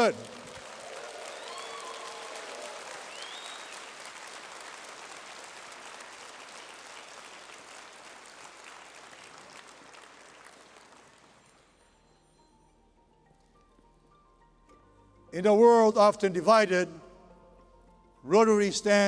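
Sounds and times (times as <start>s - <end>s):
large audience applauding: 0.0s - 11.8s.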